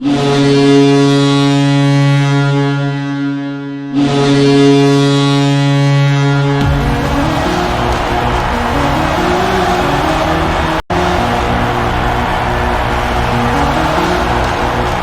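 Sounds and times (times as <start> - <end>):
goal horn blasts: 0.0 - 15.0
music: 6.6 - 15.0.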